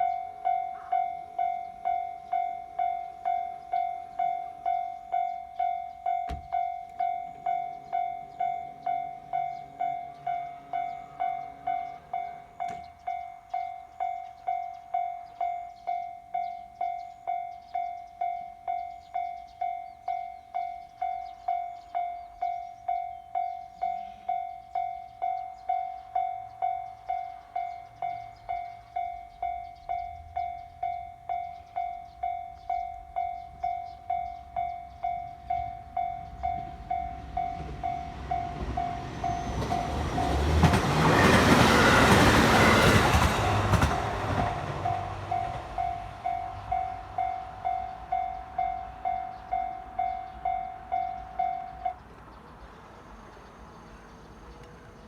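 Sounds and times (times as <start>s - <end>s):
level crossing bell ringing: 44.3s - 52.0s.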